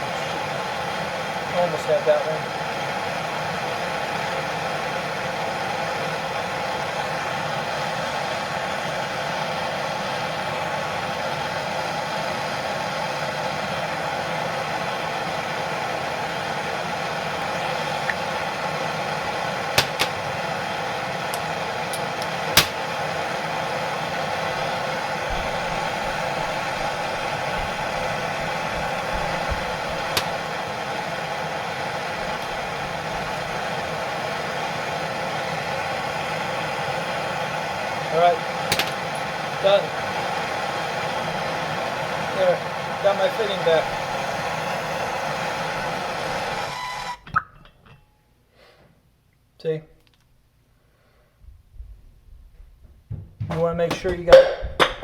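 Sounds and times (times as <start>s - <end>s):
soldering torch hissing: 0.0s - 47.2s
sharp clicks: 19.8s - 20.2s, 21.3s - 22.8s, 29.5s - 30.4s.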